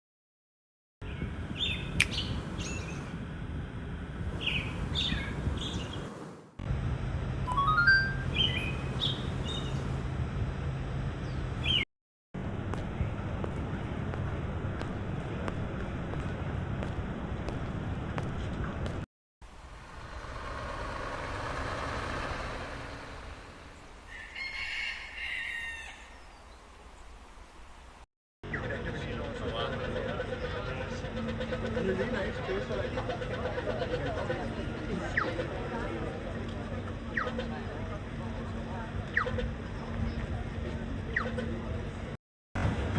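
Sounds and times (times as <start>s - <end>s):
birds chirping: 1.0s - 3.2s, 4.3s - 6.1s, 7.5s - 10.0s, 11.1s - 11.8s, 28.4s - 42.2s
low ambient rumble: 12.4s - 19.0s
hiss of passing traffic: 19.4s - 24.2s
rooster crowing: 24.1s - 26.2s.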